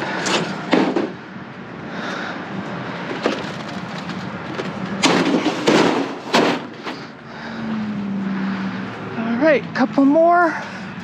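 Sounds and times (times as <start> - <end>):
junk clattering in a dumpster: 0.1 - 1.2, 3.0 - 7.1.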